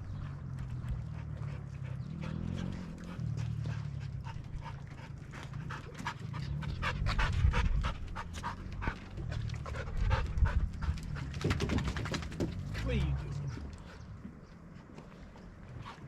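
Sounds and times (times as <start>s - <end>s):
low rumble: 0.0s - 14.4s
dog panting: 0.1s - 16.0s.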